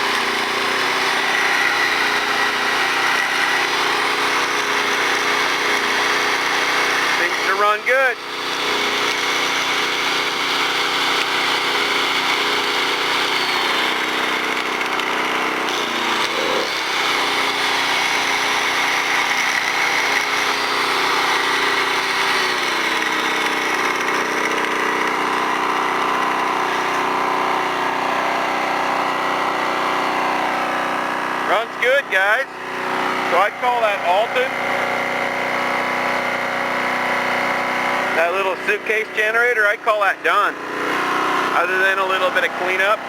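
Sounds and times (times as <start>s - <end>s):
angle grinder whining: 0.0s - 43.0s
generator engine running: 0.0s - 43.0s.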